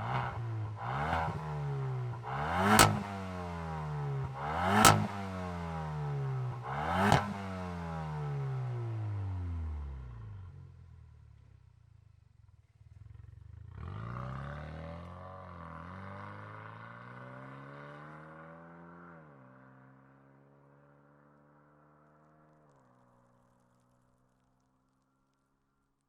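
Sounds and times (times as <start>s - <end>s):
car accelerating away: 0.0s - 8.8s.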